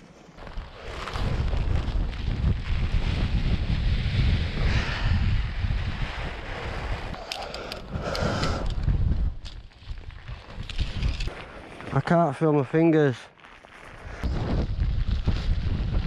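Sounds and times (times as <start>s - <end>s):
wind buffeting microphone: 0.5s - 11.4s, 14.0s - 16.0s.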